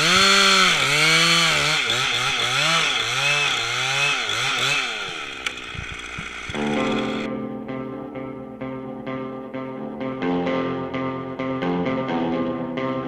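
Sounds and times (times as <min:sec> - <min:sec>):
chainsaw cutting wood: 0:00.0 - 0:07.3
guitar music: 0:06.4 - 0:13.0.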